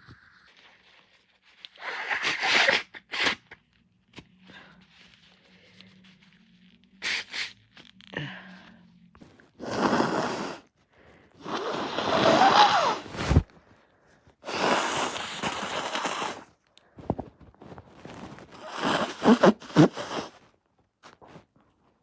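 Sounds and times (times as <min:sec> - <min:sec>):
person blowing nose: 0:01.7 - 0:03.6, 0:07.0 - 0:07.5, 0:09.6 - 0:10.7, 0:11.4 - 0:13.4, 0:14.4 - 0:16.5, 0:18.1 - 0:20.4
snorts and sniffs: 0:09.6 - 0:10.7, 0:14.4 - 0:16.4, 0:18.6 - 0:20.4.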